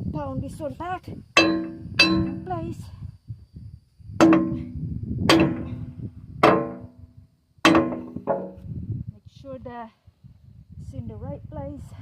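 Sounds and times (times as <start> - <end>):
sledgehammer striking steel pin: 1.4 - 2.5, 4.2 - 7.0, 7.7 - 8.6.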